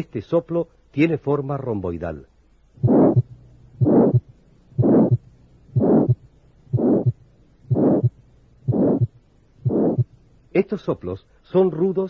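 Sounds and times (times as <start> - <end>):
heart murmur: 2.8 - 10.2
heartbeat: 2.8 - 10.2.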